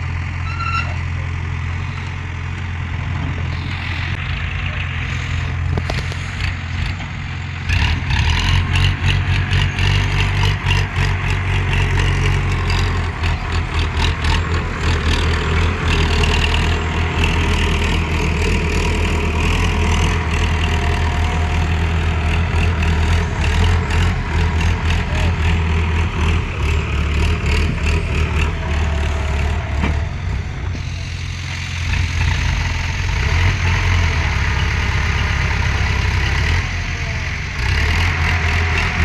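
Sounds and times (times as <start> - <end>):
diesel engine running: 0.0 - 39.0.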